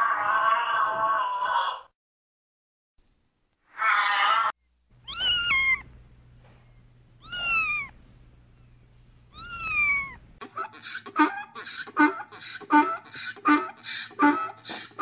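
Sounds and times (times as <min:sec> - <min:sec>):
cat meowing: 0:03.8 - 0:05.9, 0:07.2 - 0:08.0, 0:09.3 - 0:10.2.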